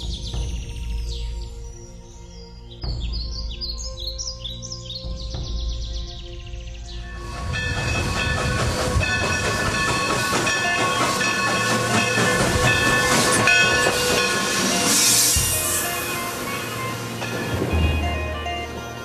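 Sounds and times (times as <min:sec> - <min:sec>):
sustained tones: 0:07.1 - 0:19.0
steady hissing noise: 0:14.0 - 0:18.3.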